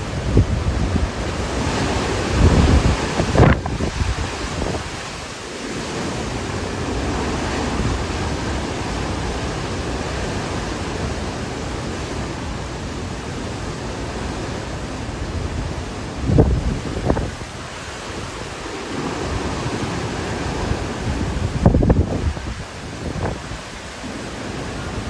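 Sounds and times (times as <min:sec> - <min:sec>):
strong wind blowing: 0:00.0 - 0:25.0.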